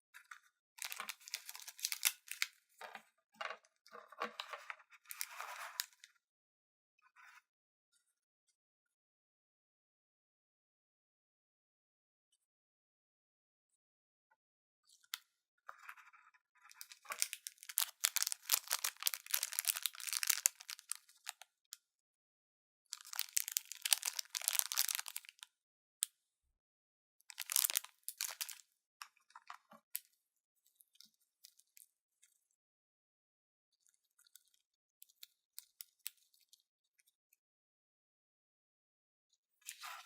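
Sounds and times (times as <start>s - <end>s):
crackers crunching: 0.8s - 3.0s, 16.8s - 21.4s, 22.9s - 25.4s, 27.3s - 28.6s.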